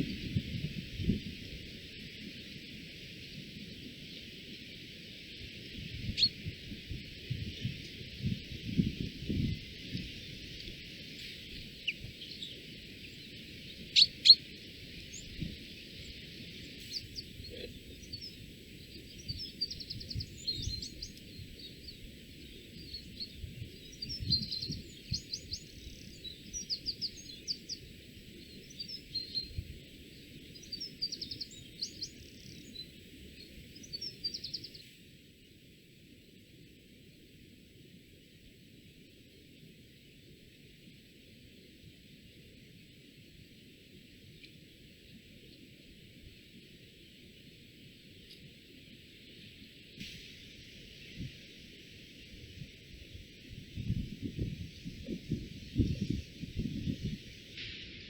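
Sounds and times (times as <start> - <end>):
steady background hiss: 0.0 - 58.0
songbird chirping and trilling: 3.3 - 8.4, 9.6 - 35.0.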